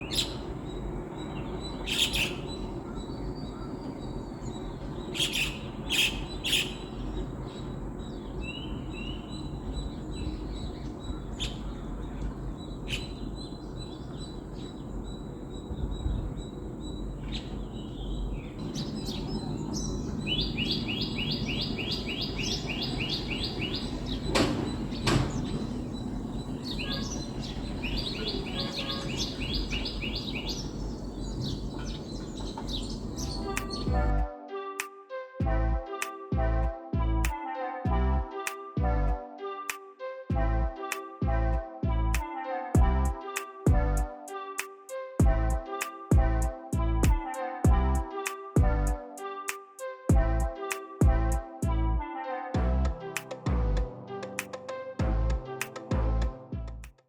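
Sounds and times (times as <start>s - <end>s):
low background rumble: 0.0s - 34.2s, 45.2s - 45.6s
wild birds chirping: 0.0s - 34.2s
bird trilling high notes: 5.0s - 34.2s.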